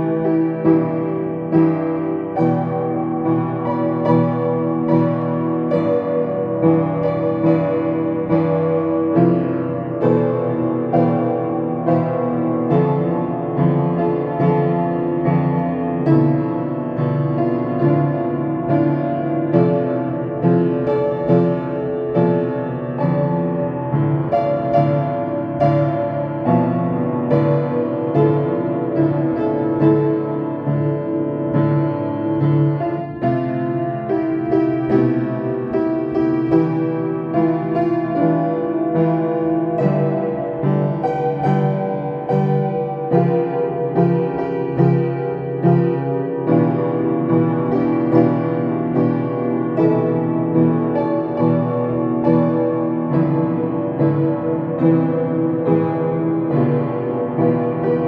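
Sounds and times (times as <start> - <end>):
piano playing: 0.0 - 58.0.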